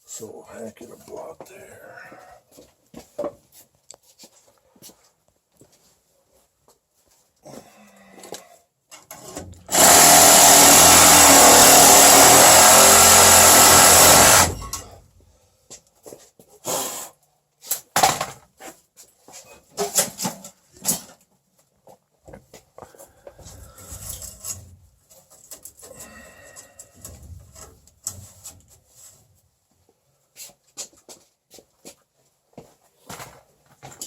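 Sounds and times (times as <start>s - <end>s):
power saw cutting plastic pipe: 9.1s - 15.0s.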